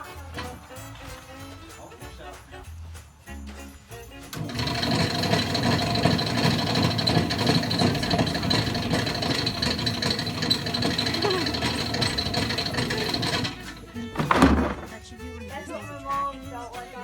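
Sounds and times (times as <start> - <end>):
machine motor whining: 4.4 - 14.9.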